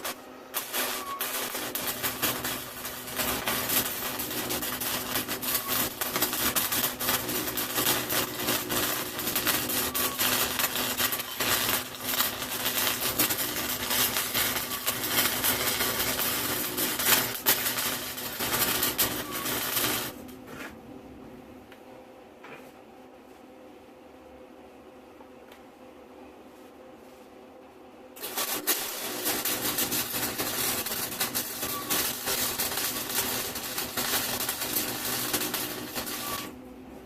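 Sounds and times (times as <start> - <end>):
welder arc crackling: 0.0 - 20.4, 28.2 - 36.6
electrical hum: 0.0 - 37.0.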